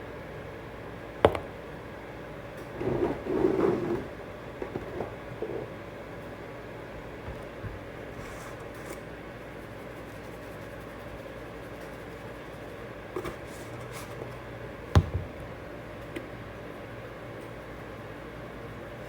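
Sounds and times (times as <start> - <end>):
steady low hum: 0.0 - 8.2, 14.4 - 17.9.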